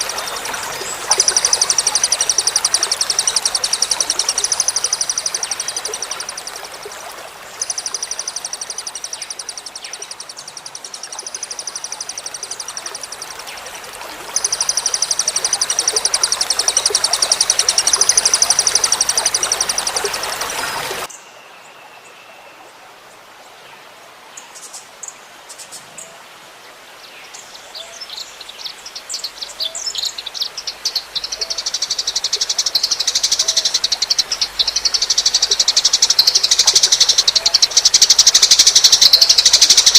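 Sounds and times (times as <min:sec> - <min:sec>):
songbird trilling: 0:00.0 - 0:06.7, 0:07.6 - 0:13.4, 0:14.2 - 0:20.8, 0:29.6 - 0:39.9
trickling water: 0:00.0 - 0:21.1, 0:28.0 - 0:39.9.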